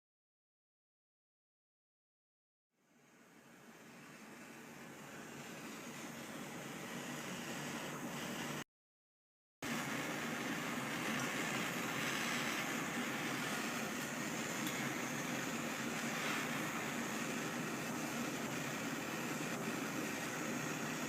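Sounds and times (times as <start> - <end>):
rushing hiss: 9.6 - 21.0.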